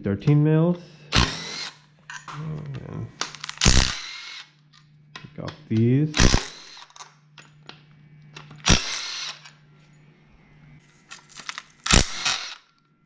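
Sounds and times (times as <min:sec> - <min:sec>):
power tool running: 0:01.1 - 0:01.9, 0:03.2 - 0:04.6, 0:06.1 - 0:07.0, 0:08.4 - 0:09.6, 0:11.1 - 0:12.7.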